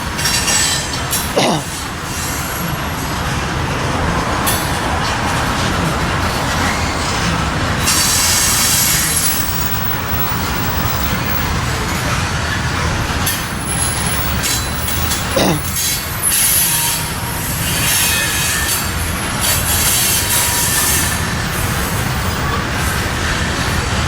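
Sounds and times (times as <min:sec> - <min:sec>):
train rumbling and rattling: 0:01.8 - 0:15.0.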